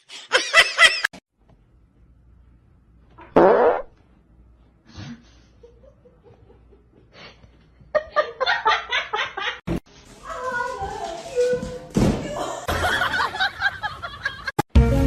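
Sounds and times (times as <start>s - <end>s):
person laughing: 0.0s - 1.2s.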